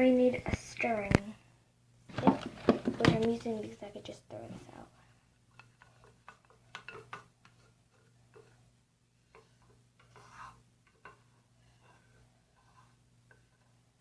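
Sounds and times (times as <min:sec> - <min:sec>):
stick scraping a bowl: 0:09.2 - 0:13.8.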